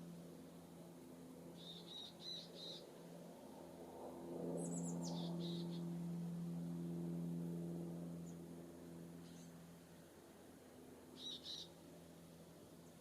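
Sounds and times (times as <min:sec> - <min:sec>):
steady low hum: 0:00.0 - 0:13.0
songbirds calling: 0:01.5 - 0:02.9, 0:04.6 - 0:05.9, 0:09.2 - 0:09.6, 0:11.2 - 0:11.8.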